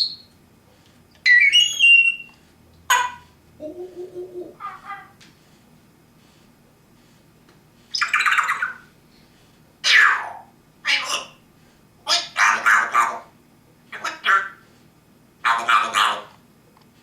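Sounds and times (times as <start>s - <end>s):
parrot calling loudly: 1.3s - 2.3s, 2.9s - 3.3s, 4.4s - 5.2s, 7.9s - 8.9s, 9.8s - 11.4s, 12.0s - 13.3s, 13.9s - 14.6s, 15.4s - 16.3s.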